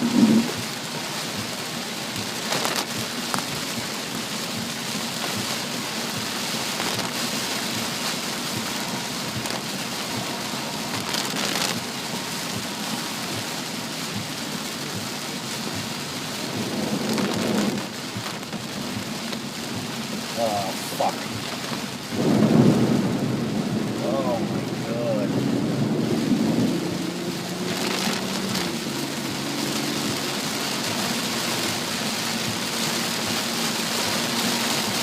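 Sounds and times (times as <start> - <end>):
water swishes: 0.0 - 23.1
heavy rain on a car: 0.0 - 35.0.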